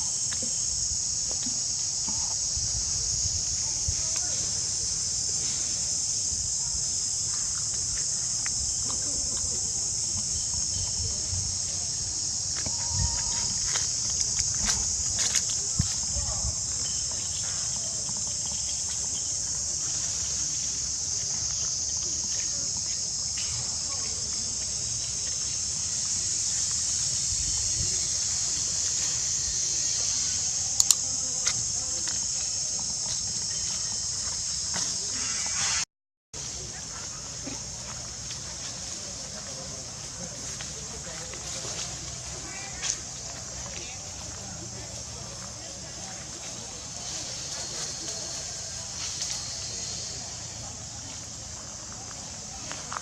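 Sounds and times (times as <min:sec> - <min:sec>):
high-pitched insect chorus: 0:00.0 - 0:35.8, 0:36.4 - 0:53.0.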